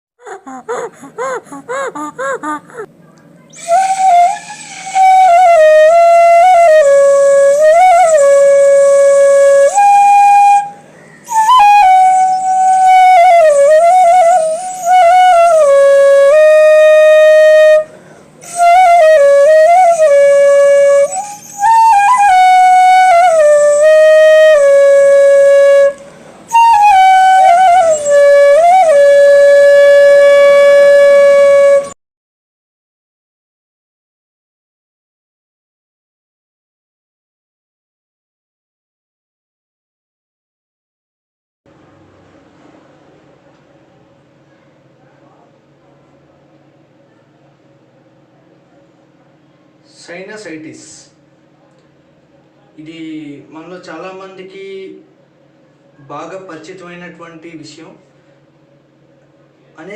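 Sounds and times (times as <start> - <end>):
solo flute melody: 3.5 - 32.0.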